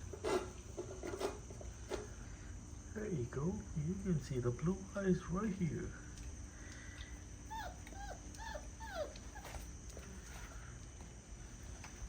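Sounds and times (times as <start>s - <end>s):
puppy whining: 7.4s - 10.2s.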